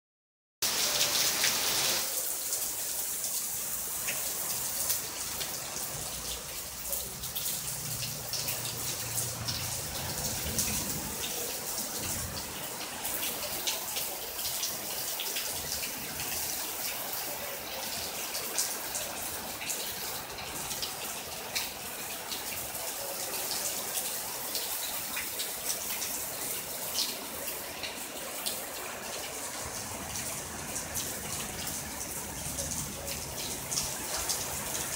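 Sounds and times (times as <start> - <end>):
heavy rain falling: 0.6 - 34.9.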